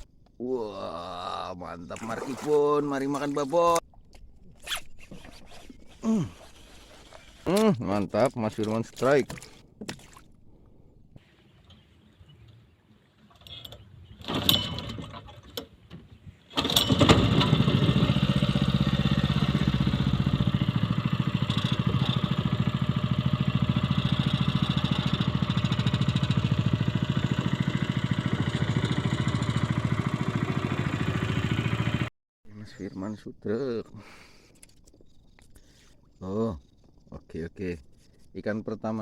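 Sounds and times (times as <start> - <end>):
small engine idling: 16.6 - 32.1.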